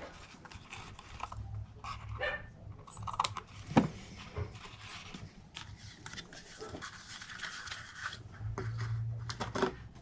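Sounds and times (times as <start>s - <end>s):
soft handling noises: 0.0s - 10.0s
dog barking: 2.2s - 2.5s.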